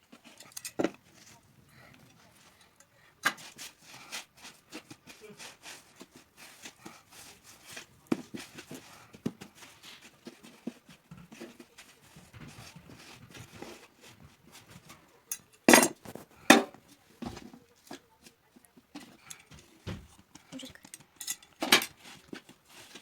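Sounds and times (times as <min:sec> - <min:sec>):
objects clicking and knocking: 0:00.1 - 0:01.4, 0:07.8 - 0:18.3, 0:18.9 - 0:23.0.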